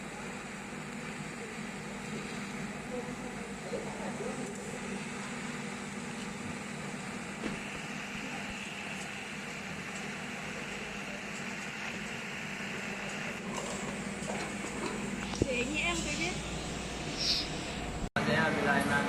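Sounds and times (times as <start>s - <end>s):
mechanical hum and hiss: 0.0s - 19.0s
higher hiss: 15.3s - 18.0s.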